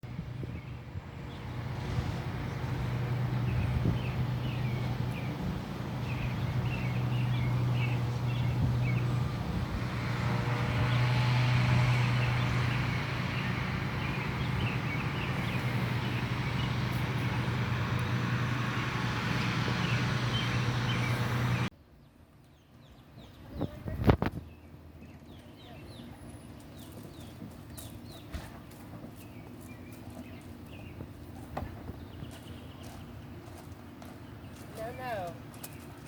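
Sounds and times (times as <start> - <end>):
low motor-like hum: 0.0 - 21.7.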